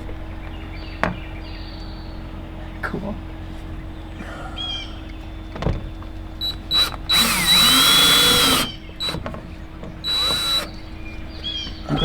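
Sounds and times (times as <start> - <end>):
power drill running in bursts: 6.4 - 11.4.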